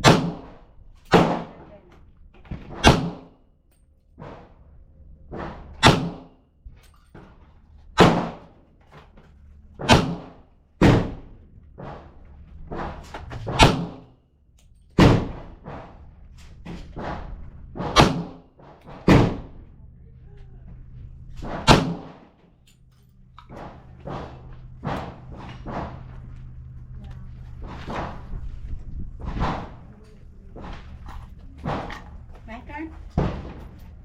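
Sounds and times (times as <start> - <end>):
faint gunshots: 0.0 - 1.6, 17.0 - 18.4, 21.4 - 22.3
handgun shots with echo: 0.0 - 1.6, 2.7 - 3.4, 5.5 - 6.4, 8.0 - 8.5, 9.8 - 11.3, 13.4 - 14.1, 17.8 - 18.4, 21.4 - 22.3.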